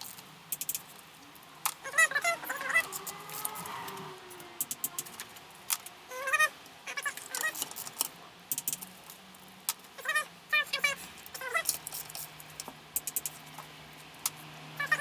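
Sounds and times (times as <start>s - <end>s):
ratchet wrench clicking: 0.0s - 0.9s, 2.6s - 3.7s, 4.3s - 5.2s, 7.3s - 8.9s, 13.0s - 13.4s.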